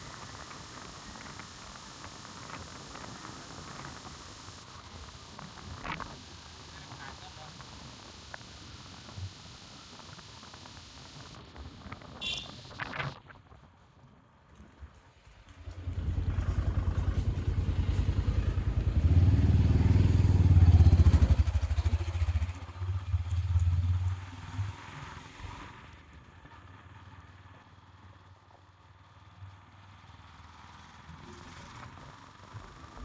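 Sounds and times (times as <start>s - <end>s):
vehicle engine running: 15.4s - 25.2s.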